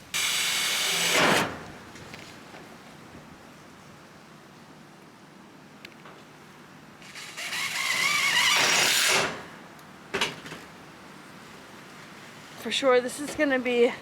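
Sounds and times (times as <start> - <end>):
power drill driving screw: 0.2 - 1.6, 7.0 - 9.5.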